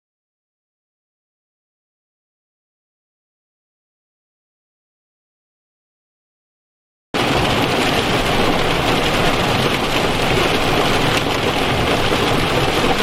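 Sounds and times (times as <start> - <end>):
rain falling: 7.2 - 13.0.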